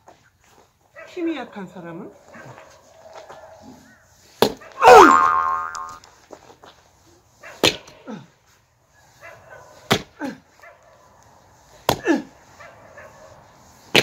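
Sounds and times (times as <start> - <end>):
axe striking firewood: 4.4 - 5.8, 9.9 - 10.1
short falling cry: 4.8 - 6.0.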